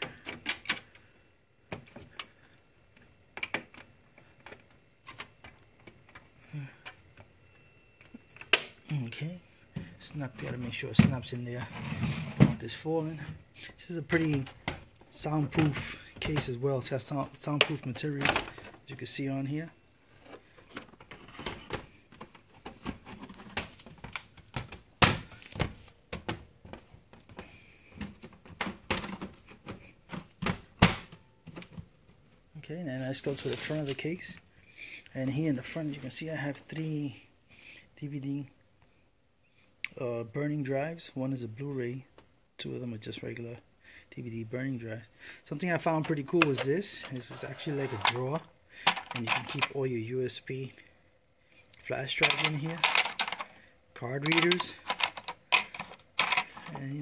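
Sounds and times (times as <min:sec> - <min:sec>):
clicks and knocks handling computer case: 0:14.1 - 0:16.6, 0:17.2 - 0:18.9, 0:20.2 - 0:32.2, 0:54.2 - 0:57.0.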